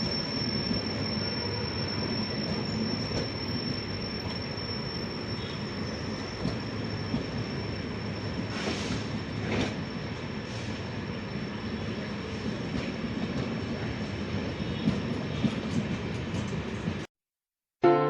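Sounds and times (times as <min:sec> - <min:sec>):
continuous high squeak: 0:00.0 - 0:10.2
train rumbling: 0:00.0 - 0:17.1.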